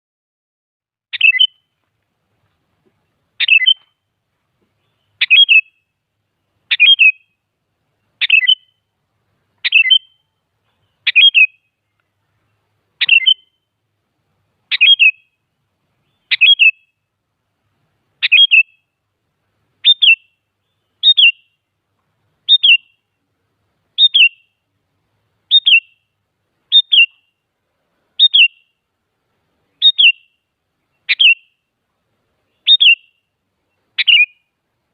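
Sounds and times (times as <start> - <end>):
bird calling: 1.1 - 1.8, 3.4 - 4.0, 4.6 - 6.0, 6.7 - 7.4, 8.0 - 8.9, 9.6 - 13.7, 14.7 - 15.4, 16.0 - 17.0, 18.2 - 18.9, 19.8 - 21.7, 22.4 - 23.2, 24.0 - 24.6, 25.5 - 27.4, 28.2 - 28.8, 29.7 - 31.7, 32.4 - 34.6.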